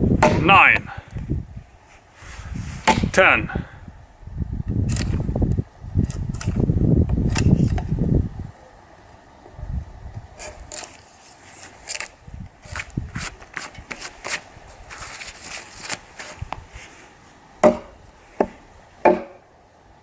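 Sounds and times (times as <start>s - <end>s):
clicking and rustling of handling: 10.4s - 17.0s
knocks on wood: 17.6s - 19.4s.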